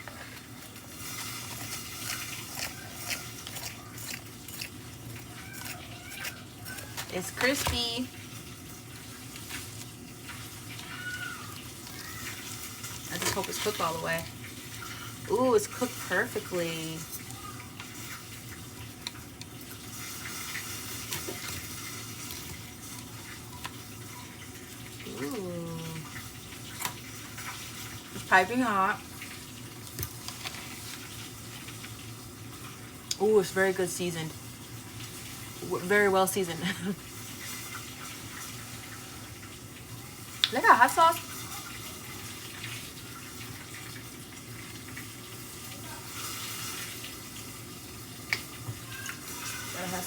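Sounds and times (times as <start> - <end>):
person chewing crispy chicken: 0.0 - 7.6
chicken frying in oil: 0.0 - 50.0.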